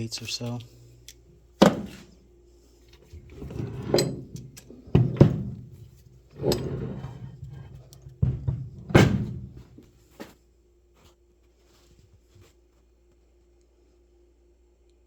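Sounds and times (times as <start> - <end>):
sharp metal clunks: 1.6 - 2.1
metal scraping and sliding: 3.0 - 9.9.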